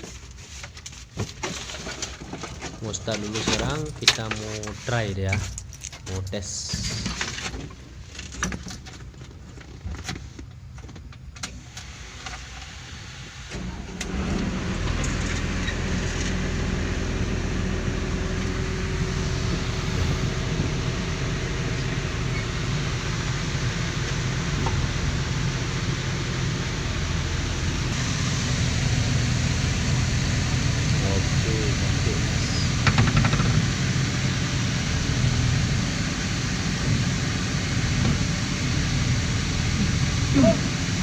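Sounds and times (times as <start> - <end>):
diesel engine idling: 12.8 - 41.0.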